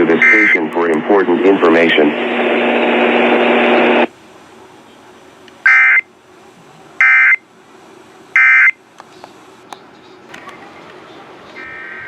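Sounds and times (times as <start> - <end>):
buzzy two-tone digital squawks: 5.7 - 6.0.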